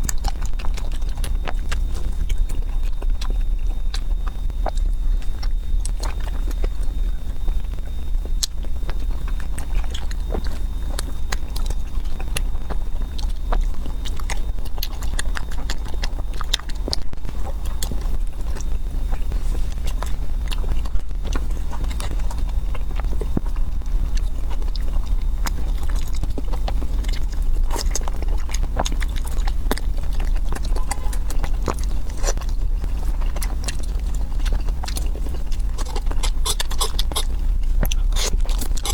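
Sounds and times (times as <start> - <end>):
chewing and biting: 0.0 - 38.9
mouth clicks and smacks: 0.0 - 38.9
steady low hum: 0.0 - 38.9.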